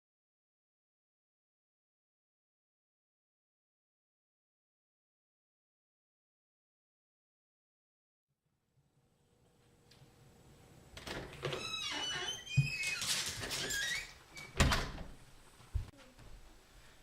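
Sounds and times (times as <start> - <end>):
door creaking and squeaking: 11.0 - 15.2.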